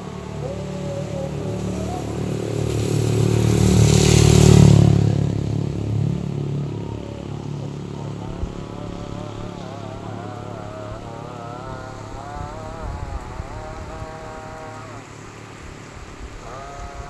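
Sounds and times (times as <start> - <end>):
vehicle passing by: 0.0 - 17.0.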